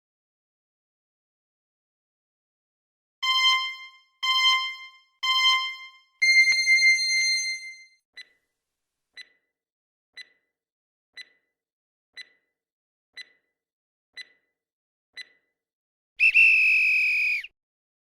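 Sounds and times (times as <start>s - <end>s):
electronic timer ticks: 3.2s - 7.1s, 9.2s - 9.5s, 10.2s - 10.5s, 11.2s - 11.5s, 12.2s - 12.5s, 13.2s - 13.6s, 14.2s - 14.6s, 15.2s - 15.5s
electronic buzzer tone: 3.2s - 7.8s.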